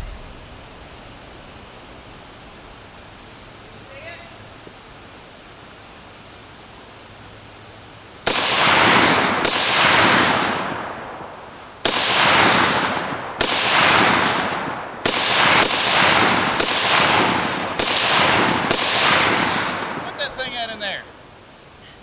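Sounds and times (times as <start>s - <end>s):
echoing gunshots: 0.0s - 1.6s, 8.2s - 21.0s.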